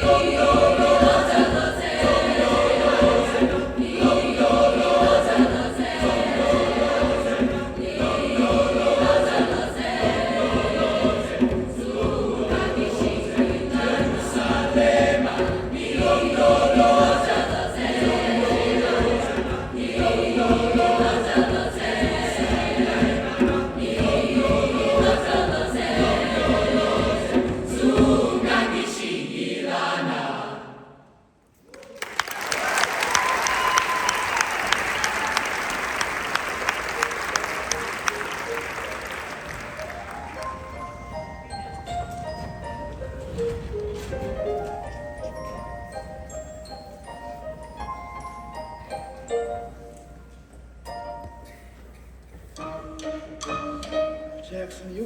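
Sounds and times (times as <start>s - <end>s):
choir singing held chords: 0.0s - 31.4s.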